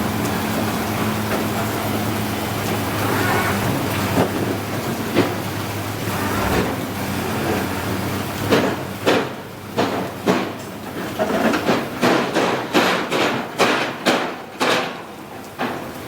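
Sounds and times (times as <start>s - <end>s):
engine hum: 0.0s - 10.3s.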